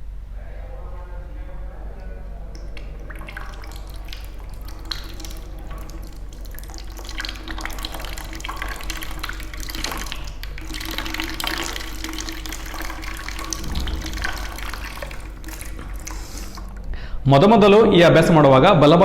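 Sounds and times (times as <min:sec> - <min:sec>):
water trickling and splashing: 0:02.6 - 0:16.9.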